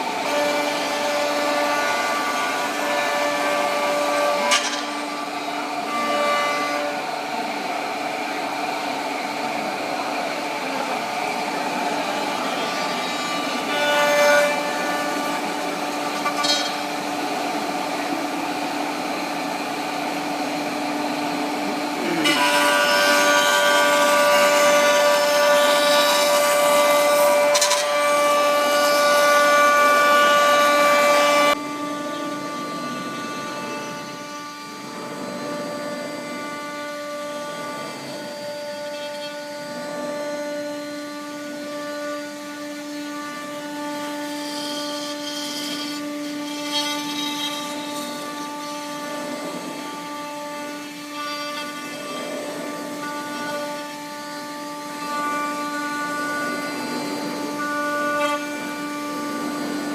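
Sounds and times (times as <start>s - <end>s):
wood router whining while cutting: 0.0s - 59.9s.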